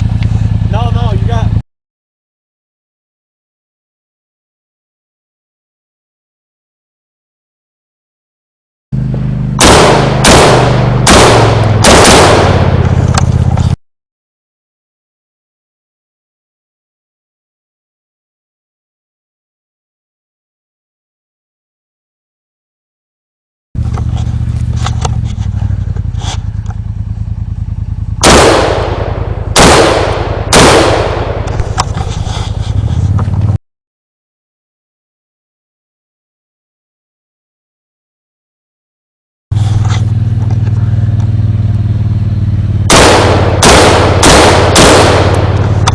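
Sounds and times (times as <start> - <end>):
steady low rumble: 0.0 - 1.6, 9.0 - 13.8, 23.8 - 33.6, 39.5 - 45.9
loud gunshot blasts: 9.6 - 13.2, 28.2 - 31.9, 42.9 - 45.9
machine gun firing: 9.6 - 13.5, 28.2 - 32.2, 42.9 - 45.9.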